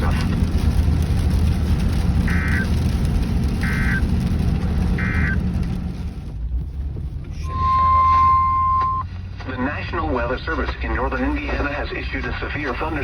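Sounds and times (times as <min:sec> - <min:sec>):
low rumble: 0:00.0 - 0:13.0
warbling data bursts: 0:03.6 - 0:04.0.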